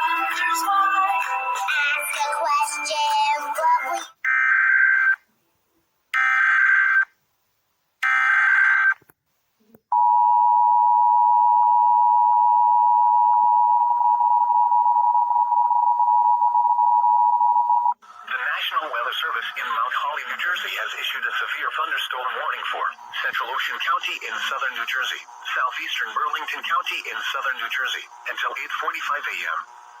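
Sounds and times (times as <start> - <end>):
digital data bursts: 18.4 - 29.7.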